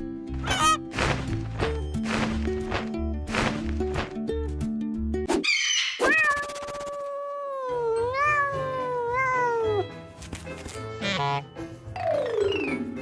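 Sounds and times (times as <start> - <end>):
cartoon cat meowing: 0.4 - 0.8, 6.0 - 9.9
soft background music: 7.6 - 13.0.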